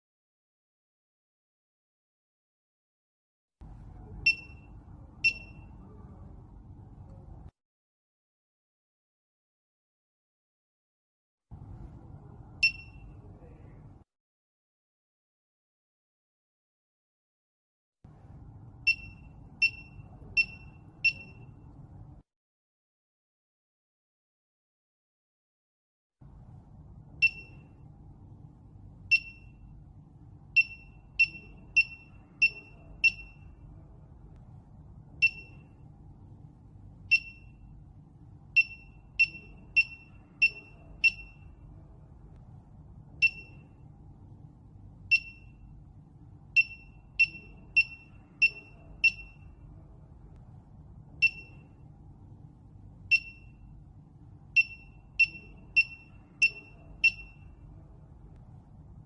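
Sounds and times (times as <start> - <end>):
faint low hum: 3.6 - 7.5, 11.5 - 14.1, 18.1 - 22.2, 26.2 - 59.0
high electronic beeps: 4.2 - 5.8, 12.6 - 13.2, 18.9 - 21.6, 27.2 - 27.8, 29.1 - 29.6, 30.6 - 33.6, 35.2 - 35.8, 37.1 - 37.7, 38.6 - 41.6, 43.2 - 43.8, 45.1 - 45.6, 46.6 - 49.6, 51.2 - 51.8, 53.1 - 53.6, 54.6 - 57.6.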